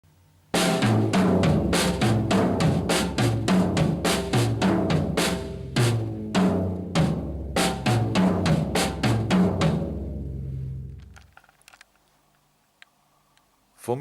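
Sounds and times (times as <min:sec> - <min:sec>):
drum kit playing steady beat: 0:00.5 - 0:10.4.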